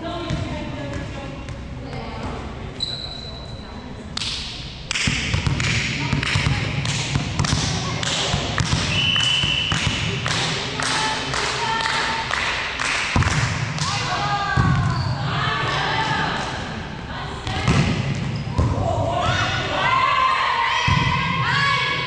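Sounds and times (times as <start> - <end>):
volleyball thuds and knocks: 4.9 - 10.2.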